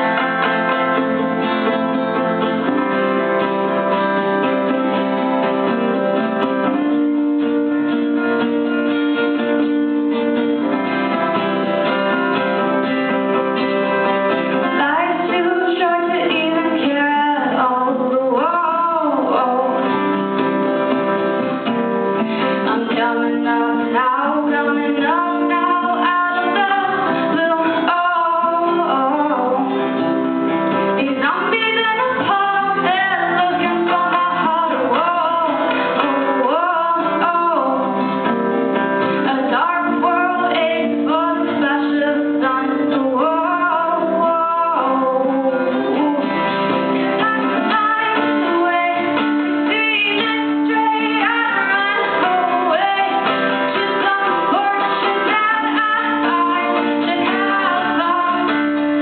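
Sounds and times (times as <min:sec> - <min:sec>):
guitar playing chords: 0:00.0 - 0:59.0
person singing: 0:14.5 - 0:20.3, 0:22.2 - 0:59.0.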